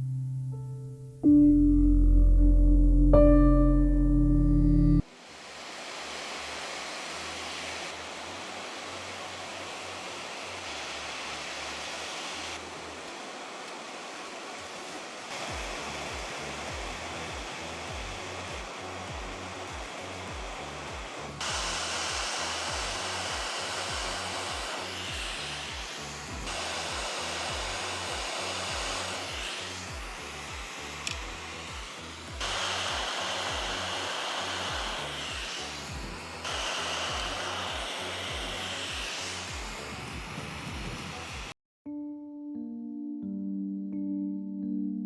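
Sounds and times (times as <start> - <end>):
faint low rhythmic beat: 0.0 - 5.0, 15.4 - 24.7, 35.9 - 38.6
hot-air blower rushing air: 5.0 - 41.6.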